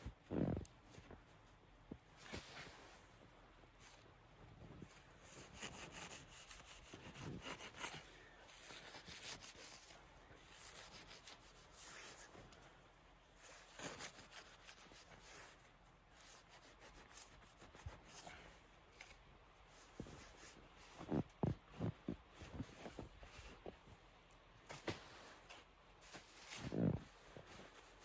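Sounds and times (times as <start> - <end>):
shovel scraping snow: 26.0 - 28.0.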